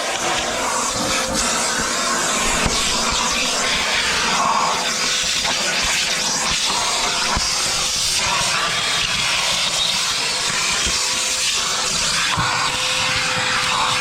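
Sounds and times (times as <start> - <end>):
rush of air: 0.0 - 10.8.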